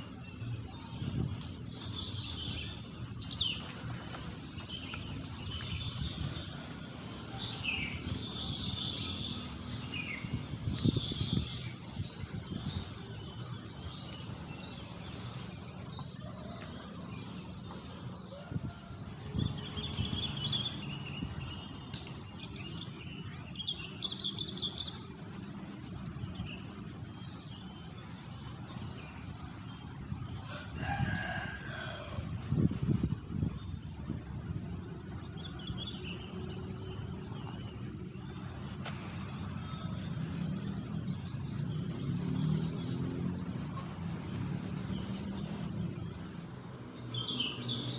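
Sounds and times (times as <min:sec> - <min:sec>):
birds chirping and singing: 0:00.0 - 0:47.9
rooster crowing: 0:30.5 - 0:32.3
low rumbles: 0:31.6 - 0:47.4.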